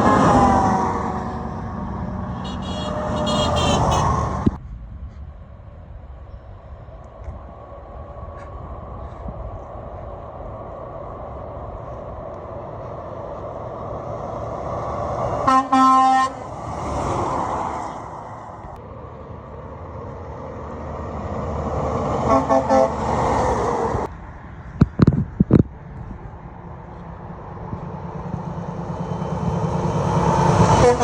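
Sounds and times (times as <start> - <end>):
truck horn honking: 0.0 - 4.5, 15.4 - 16.5, 22.2 - 23.1, 30.7 - 31.0
passing vehicle road noise: 0.0 - 31.0.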